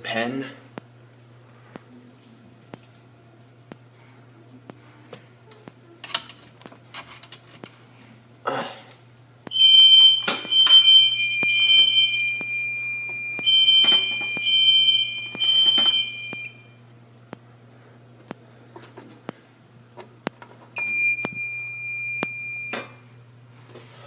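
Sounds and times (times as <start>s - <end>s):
steady high alarm tone: 9.5s - 16.8s, 20.8s - 23.2s
fire alarm beeping: 9.5s - 16.9s, 20.8s - 23.2s.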